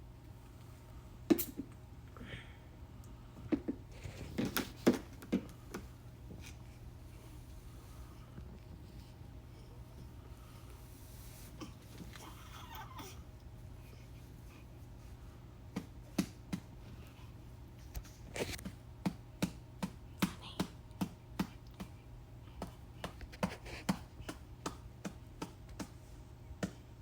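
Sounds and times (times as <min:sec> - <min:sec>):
soft pats on baby's back: 0:22.6 - 0:26.8.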